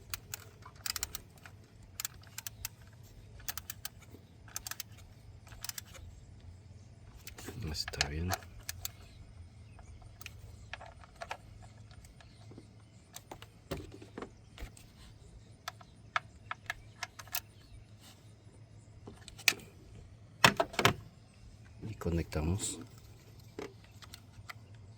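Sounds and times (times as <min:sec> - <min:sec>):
faint low hum: 0:00.0 - 0:24.9
light metallic clicks and taps: 0:07.2 - 0:14.9.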